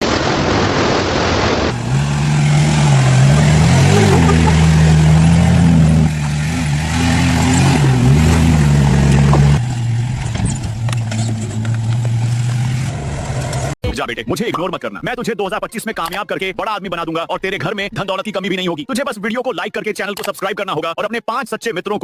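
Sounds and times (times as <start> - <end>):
vehicle motor running: 1.7 - 13.8.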